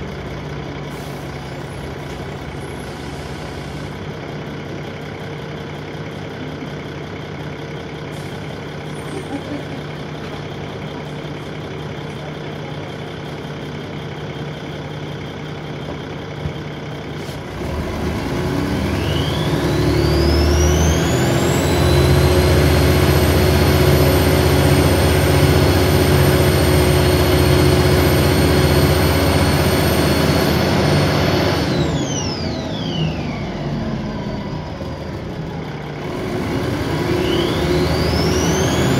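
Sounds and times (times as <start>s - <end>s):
bus diesel engine: 0.0s - 38.9s
turbo whine: 18.9s - 38.9s.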